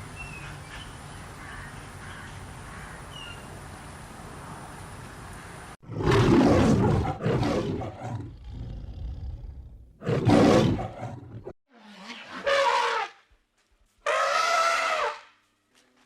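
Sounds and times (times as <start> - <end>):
big cat roaring: 5.8 - 11.5.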